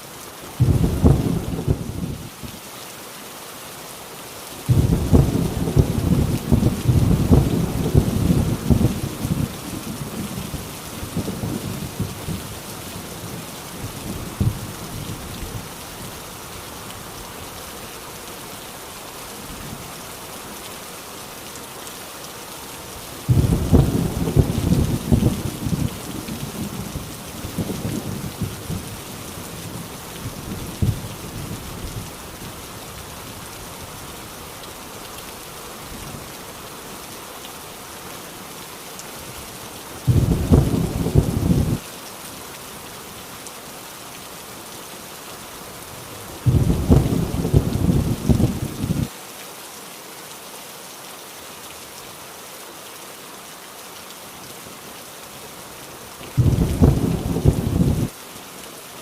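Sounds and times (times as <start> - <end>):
heavy rain falling: 0.0 - 59.0
thunder rumbling: 0.6 - 2.3, 4.7 - 12.6, 23.3 - 32.1, 40.1 - 41.8, 46.4 - 49.1, 56.4 - 58.1
loud thunder claps: 23.3 - 25.9, 40.1 - 41.8, 46.5 - 49.0, 56.4 - 58.1.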